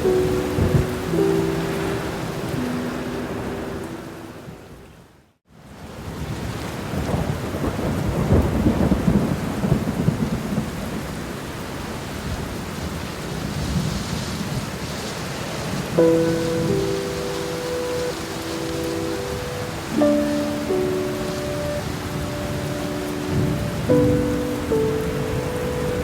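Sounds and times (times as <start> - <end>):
thunder rumbling: 0.0 - 3.1, 7.0 - 11.2, 15.7 - 26.0
steady rain: 0.0 - 26.0.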